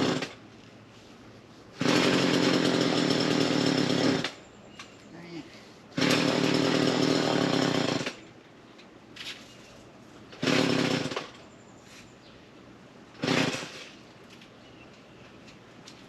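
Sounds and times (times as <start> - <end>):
chainsaw throttle bursts: 0.0 - 0.4, 1.8 - 4.4, 6.0 - 8.2, 10.4 - 11.4, 13.2 - 13.9.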